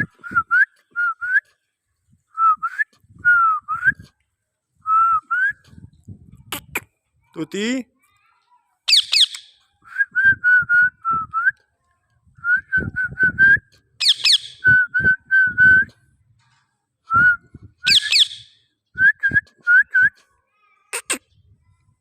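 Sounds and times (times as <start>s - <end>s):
parrot whistling: 8.9s - 9.5s, 14.0s - 14.6s, 17.9s - 18.6s
parrot squawk: 17.9s - 18.4s.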